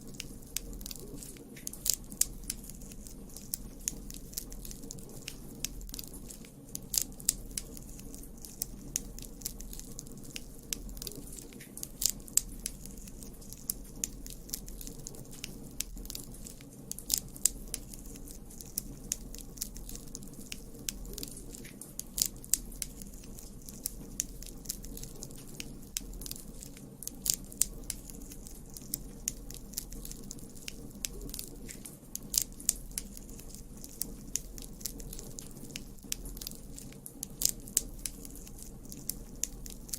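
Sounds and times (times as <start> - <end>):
low rumble of flames: 0.0 - 39.9
wood crackling and popping: 0.0 - 39.9.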